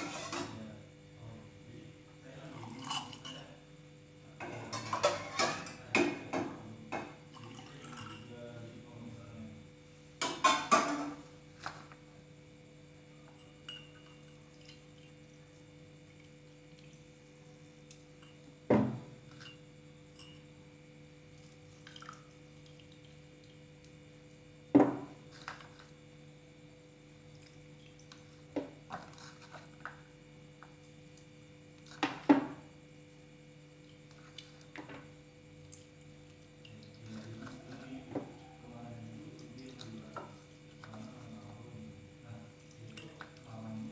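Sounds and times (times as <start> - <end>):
glassware and utensils clinking: 0.0 - 0.6, 2.5 - 3.5, 4.4 - 8.3, 10.2 - 11.3, 13.3 - 14.8, 18.2 - 20.5.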